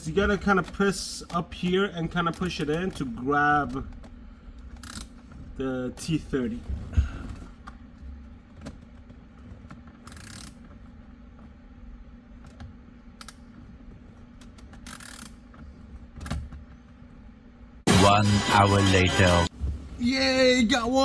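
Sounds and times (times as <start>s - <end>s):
ratchet ratcheting: 4.7s - 5.3s, 9.8s - 10.9s, 14.4s - 15.6s.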